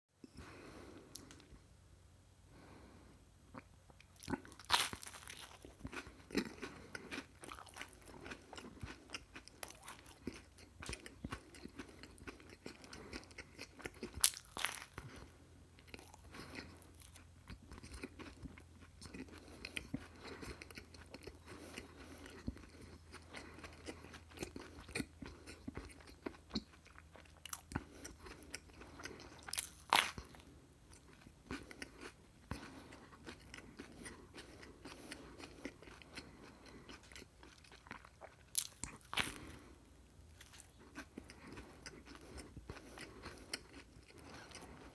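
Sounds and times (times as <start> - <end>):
crunchy chewing: 3.5 - 44.9.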